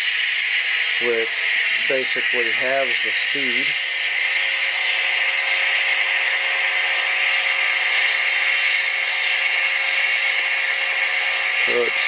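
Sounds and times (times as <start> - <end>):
model locomotive engine sound: 0.0 - 12.0.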